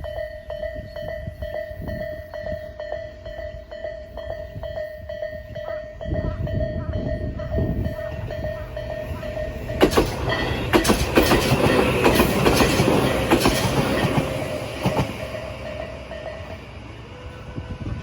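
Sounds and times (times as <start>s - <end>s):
electronic crossing warning bell: 0.0s - 17.8s
train wheels clattering over rails: 6.1s - 16.6s.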